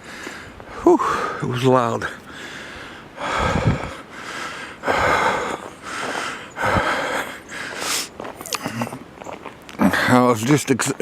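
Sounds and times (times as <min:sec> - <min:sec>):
man breathing hard: 0:00.0 - 0:01.4, 0:02.2 - 0:09.0.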